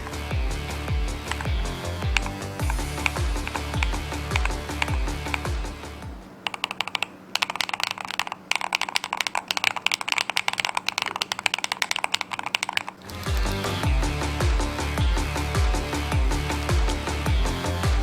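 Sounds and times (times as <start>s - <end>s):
keyboard keystroke clicks: 6.4s - 13.6s.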